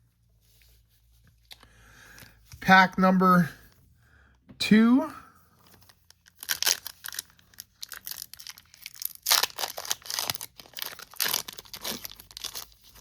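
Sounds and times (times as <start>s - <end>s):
foil wrapper crinkling and tearing: 5.7s - 13.0s.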